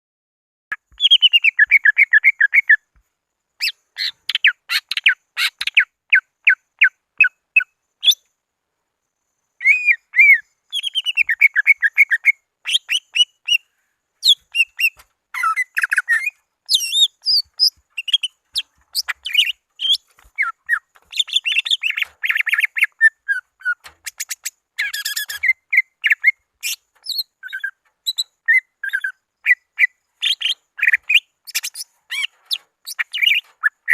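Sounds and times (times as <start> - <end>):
bird singing varied song: 0.7 - 8.4, 9.0 - 33.9.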